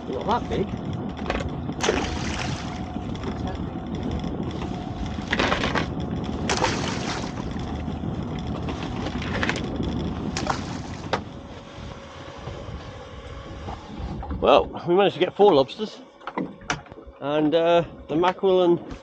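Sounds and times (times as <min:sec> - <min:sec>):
sea rumble: 0:00.0 - 0:19.0
wind: 0:00.0 - 0:19.0
knocks and splashes of gear: 0:01.8 - 0:02.8, 0:06.5 - 0:07.5.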